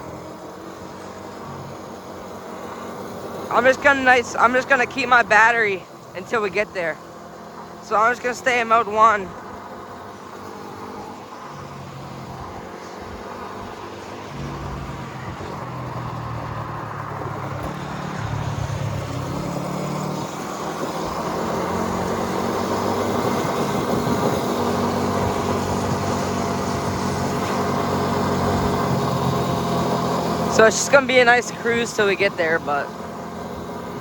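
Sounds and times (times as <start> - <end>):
small motorbike engine: 0.0 - 34.0
wind and road noise: 0.0 - 34.0.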